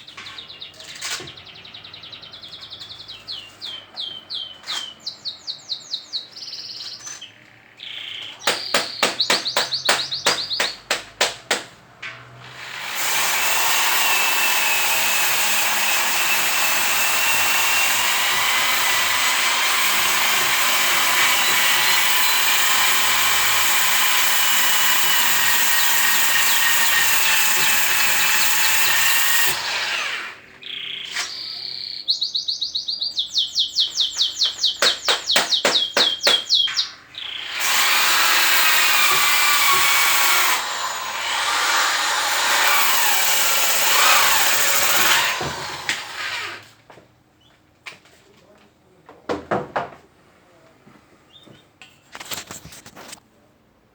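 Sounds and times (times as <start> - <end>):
birds chirping: 0.0 - 11.6, 16.2 - 39.2, 51.3 - 51.7.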